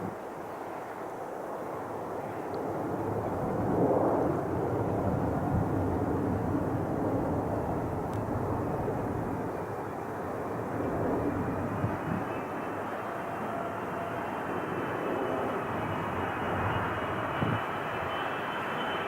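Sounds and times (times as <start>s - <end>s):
jet engines rumbling: 0.0s - 19.0s
faint high whine: 8.2s - 19.0s.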